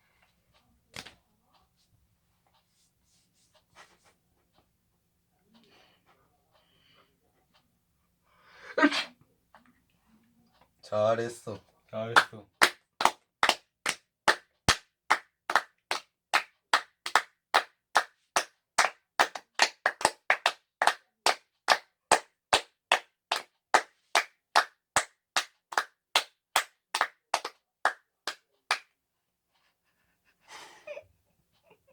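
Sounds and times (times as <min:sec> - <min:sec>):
person clapping slowly: 0:12.2 - 0:28.9.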